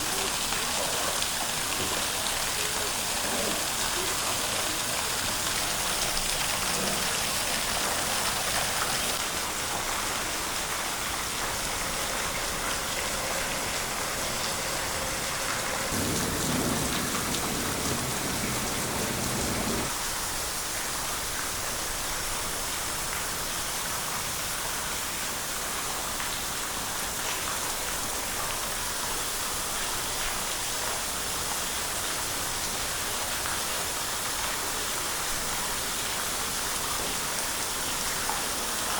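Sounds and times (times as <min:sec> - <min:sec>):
steady rain hiss: 0:00.0 - 0:38.9
low rumble: 0:12.1 - 0:19.9.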